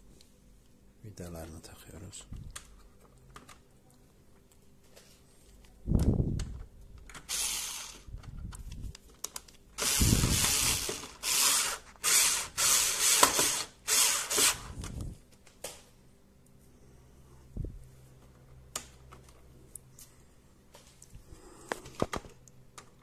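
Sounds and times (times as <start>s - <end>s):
cordless drill driving screws: 7.3s - 8.1s, 9.8s - 14.8s.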